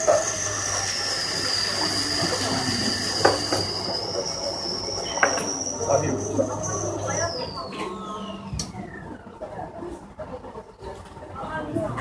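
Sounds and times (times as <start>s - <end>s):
high-pitched machine whine: 0.0s - 9.3s.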